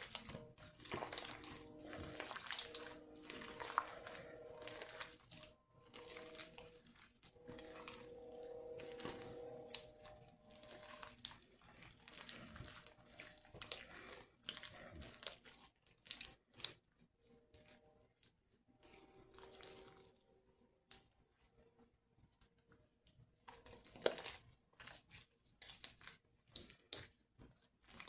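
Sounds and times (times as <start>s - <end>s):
slime squeezed by hand: 0.0s - 16.8s.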